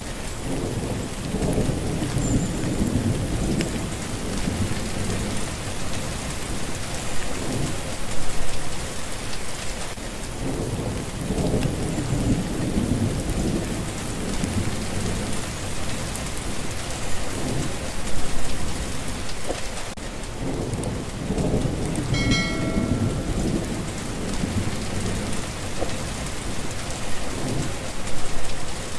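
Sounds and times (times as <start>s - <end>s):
steady rain falling: 0.0s - 28.9s
thunder rumbling: 0.4s - 6.6s, 10.4s - 19.0s, 20.4s - 28.1s.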